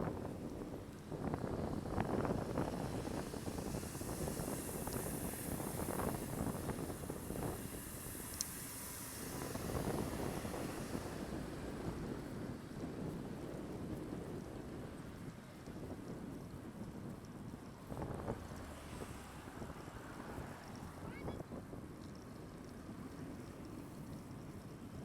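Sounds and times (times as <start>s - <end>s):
low road noise rumble: 0.0s - 25.0s
wind buffeting microphone: 0.0s - 25.0s
faint tick: 8.3s - 8.6s, 22.0s - 24.8s.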